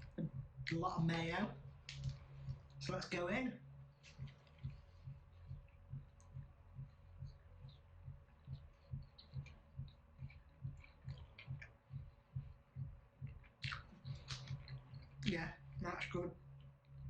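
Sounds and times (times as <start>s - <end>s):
person chewing: 8.7s - 11.7s, 13.3s - 15.3s
faint wet mouth clicks: 13.3s - 15.3s.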